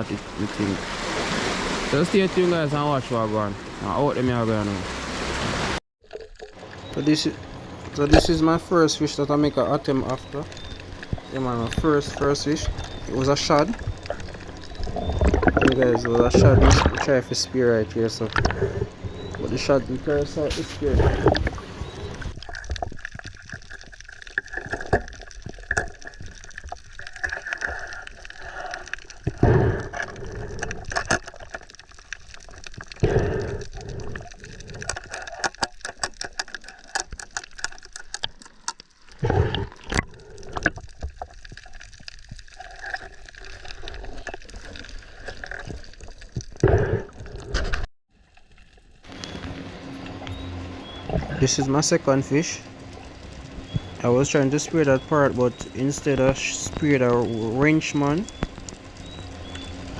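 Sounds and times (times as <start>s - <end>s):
whooshing surges of water: 0.0s - 5.8s, 6.6s - 22.4s, 49.1s - 59.9s
water sloshing and gurgling: 0.0s - 59.9s
small clicks and ticks: 6.1s - 59.9s.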